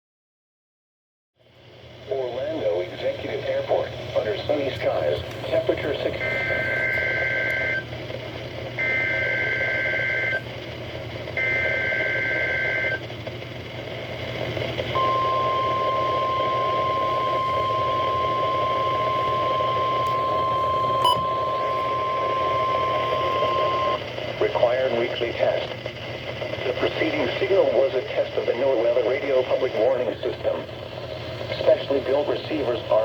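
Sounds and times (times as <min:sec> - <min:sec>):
receiver hiss: 0:01.6 - 0:33.0
steady warning alarm tone: 0:06.2 - 0:07.8, 0:08.8 - 0:10.4, 0:11.4 - 0:13.0, 0:15.0 - 0:24.0.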